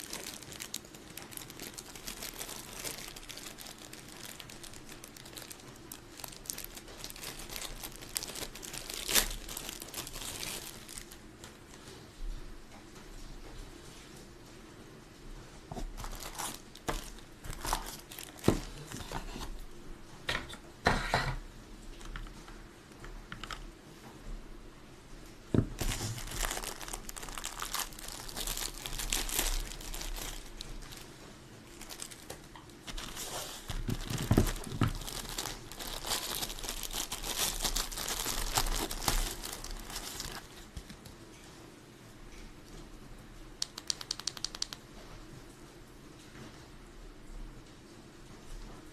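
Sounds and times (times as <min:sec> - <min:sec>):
material crinkling and rustling: 0:00.0 - 0:12.0, 0:15.6 - 0:19.6, 0:25.5 - 0:41.2.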